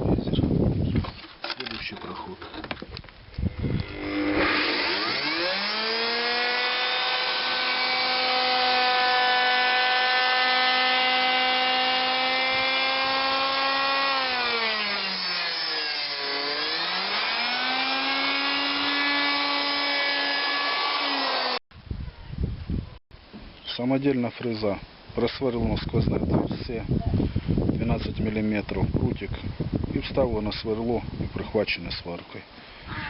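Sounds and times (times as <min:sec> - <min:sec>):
electric router motor whine: 0:03.4 - 0:21.6.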